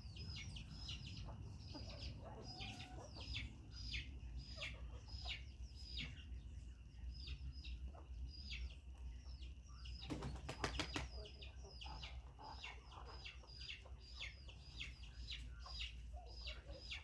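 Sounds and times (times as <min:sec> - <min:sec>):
chickens peeping: 0:00.0 - 0:17.0
chicken clucking: 0:00.1 - 0:06.4, 0:09.9 - 0:17.0.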